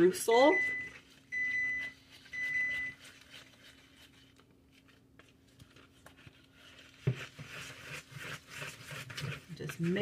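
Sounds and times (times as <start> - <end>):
low steady hum: 0.0 - 10.0
appliance high beep: 0.5 - 3.0.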